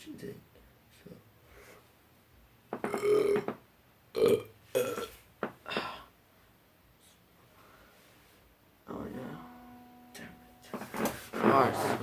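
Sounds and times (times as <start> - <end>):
person burping: 2.8 - 5.1.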